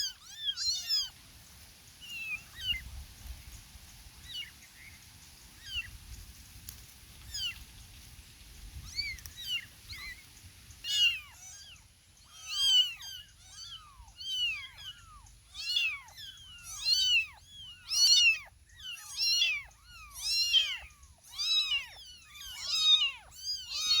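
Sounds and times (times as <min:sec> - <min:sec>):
kittens meowing: 0:00.0 - 0:01.2, 0:02.0 - 0:02.8, 0:04.2 - 0:04.9, 0:05.6 - 0:05.9, 0:07.3 - 0:07.6, 0:08.8 - 0:24.0.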